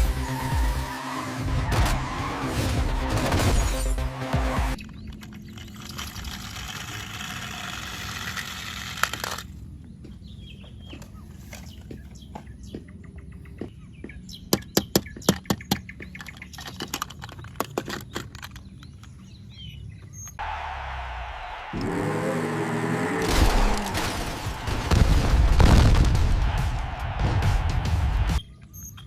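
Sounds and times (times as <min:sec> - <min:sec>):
toy vehicles clicking and knocking: 0:04.8 - 0:09.6, 0:14.5 - 0:19.3.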